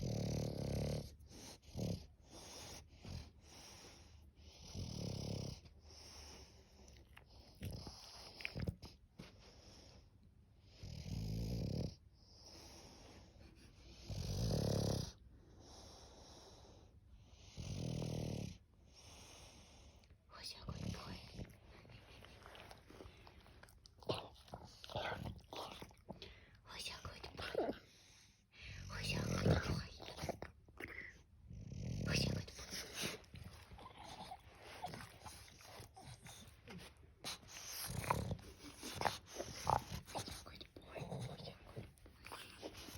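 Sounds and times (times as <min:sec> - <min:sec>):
dog snoring: 0:00.0 - 0:06.4, 0:10.7 - 0:12.9, 0:13.9 - 0:19.9, 0:27.0 - 0:42.9.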